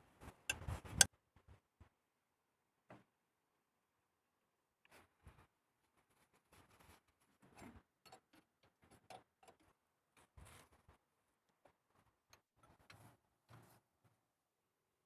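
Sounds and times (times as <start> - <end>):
faint clicks and knocks: 7.4 - 13.8.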